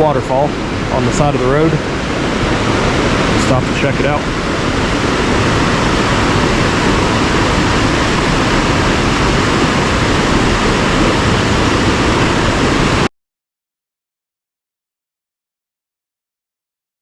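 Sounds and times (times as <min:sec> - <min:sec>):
waterfall roaring: 0:00.0 - 0:13.1.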